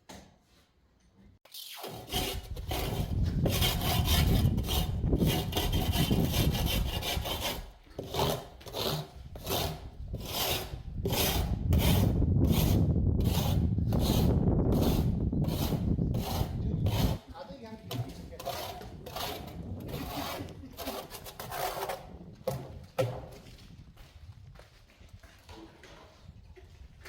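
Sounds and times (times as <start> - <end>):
trowel scraping wet cement: 1.5 - 22.7.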